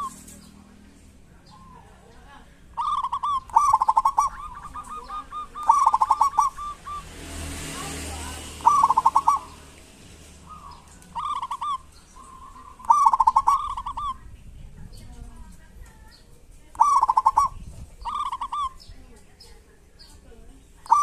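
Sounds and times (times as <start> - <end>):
dove staccato cooing: 1.6 - 14.2, 16.7 - 18.9.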